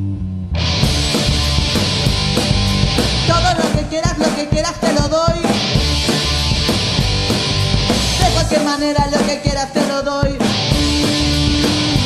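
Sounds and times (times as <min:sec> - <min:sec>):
rock band playing: 0:00.5 - 0:12.0
person singing: 0:03.2 - 0:05.7, 0:08.2 - 0:12.0.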